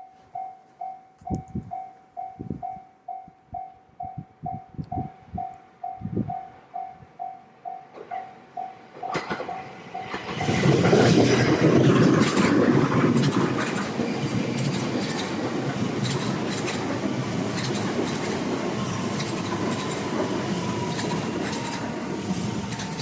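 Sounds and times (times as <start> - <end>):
train wheel and rail rumble: 0.2 - 23.0
wheels clicking over rail joints: 9.0 - 23.0.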